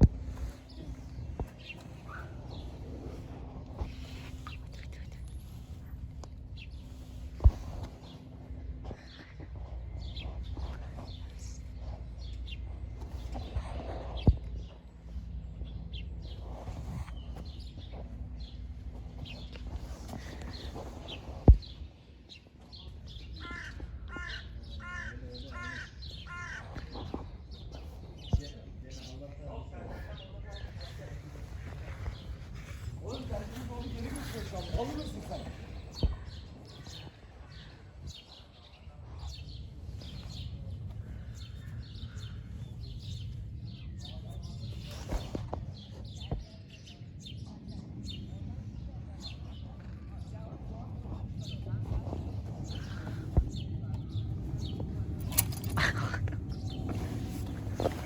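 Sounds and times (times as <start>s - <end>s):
low outdoor rumble: 0.0s - 58.0s
small birds chirping: 0.0s - 58.0s
crow cawing: 23.4s - 26.7s.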